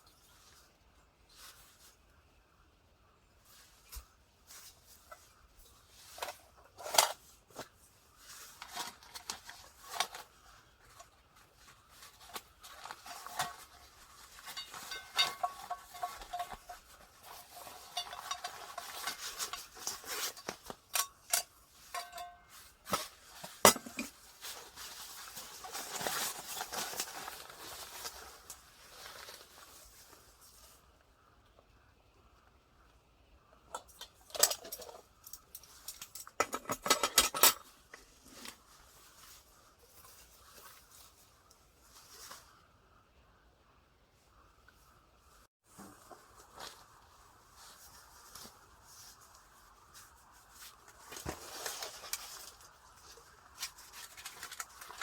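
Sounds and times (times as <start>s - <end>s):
rustling: 0.0s - 31.6s, 33.7s - 43.1s, 44.2s - 55.0s
objects clicking and clattering: 12.2s - 24.2s, 33.7s - 38.6s.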